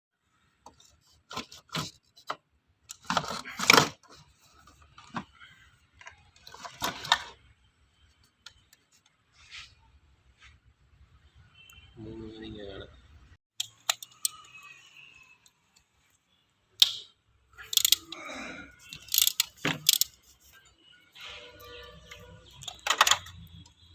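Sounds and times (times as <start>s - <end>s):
hand tools and metal parts clinking: 17.6s - 18.2s, 18.8s - 23.7s.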